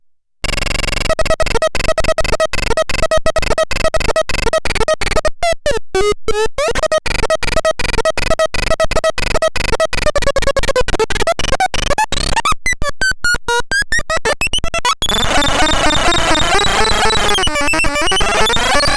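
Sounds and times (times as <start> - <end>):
synthesizer pulsing tones: 4.0 - 18.9
synthesizer pitch glides: 13.7 - 18.9.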